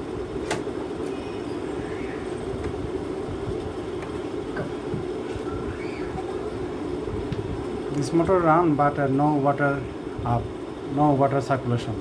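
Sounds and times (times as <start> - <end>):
low rumbling background noise: 0.0 - 12.0.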